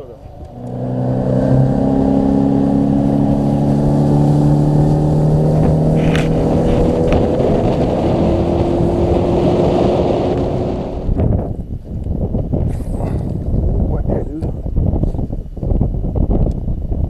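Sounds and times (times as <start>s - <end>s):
water rushing: 0.0s - 11.1s
motorboat engine running: 0.0s - 11.5s
wind: 0.0s - 17.0s.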